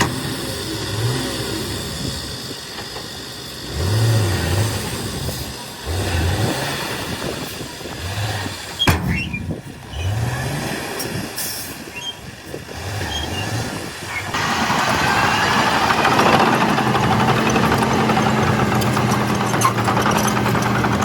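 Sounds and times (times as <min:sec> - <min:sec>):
bulldozer engine drone: 0:00.0 - 0:21.0
rumble of tracks and soil: 0:00.0 - 0:21.0.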